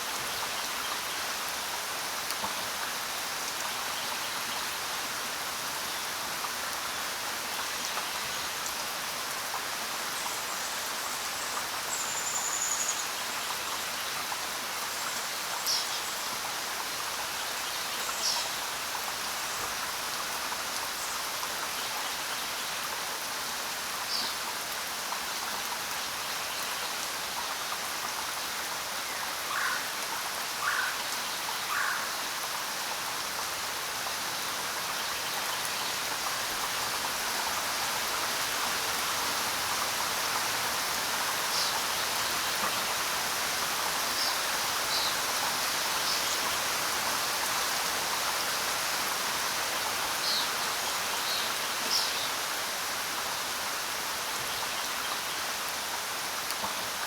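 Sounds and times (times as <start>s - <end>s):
rain pattering on ground: 0.0s - 57.0s.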